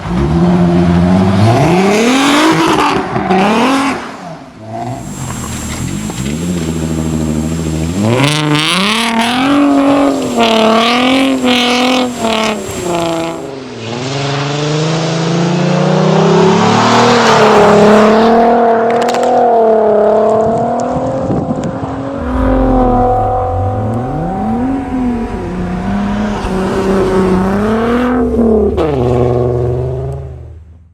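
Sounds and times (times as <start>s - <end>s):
car engine revving hard: 0.0s - 13.5s, 22.2s - 30.2s
tyres hissing and thrown snow: 4.8s - 13.5s.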